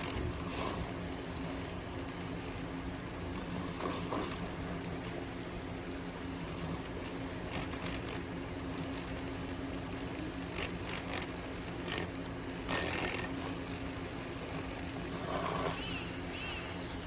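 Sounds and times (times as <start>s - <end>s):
steady low hum: 0.0s - 17.0s
handling clicks and scrapes: 3.3s - 5.2s, 6.5s - 16.8s.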